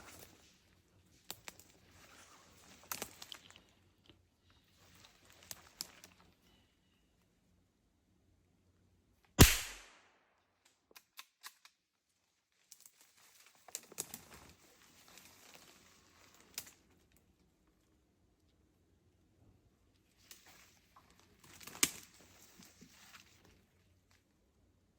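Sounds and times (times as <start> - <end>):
gunshot: 9.4 - 10.2.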